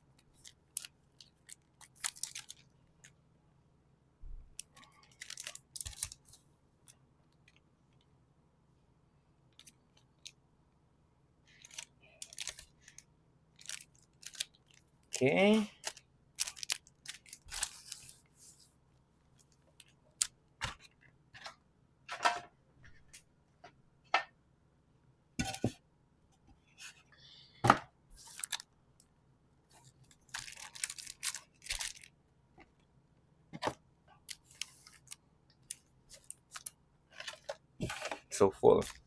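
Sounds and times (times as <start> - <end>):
foil wrappers crinkling and tearing: 0.3 - 2.7, 4.6 - 6.4, 11.6 - 13.0, 13.6 - 18.3, 28.2 - 28.6, 29.8 - 32.1.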